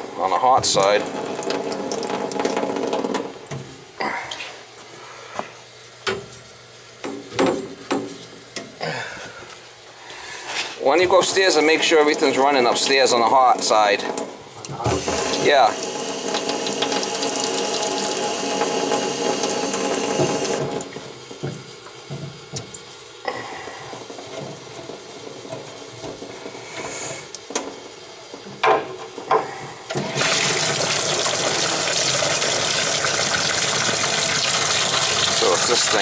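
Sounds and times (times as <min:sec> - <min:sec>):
water running from tap: 0:00.2 - 0:03.4, 0:10.9 - 0:21.0, 0:30.0 - 0:36.0.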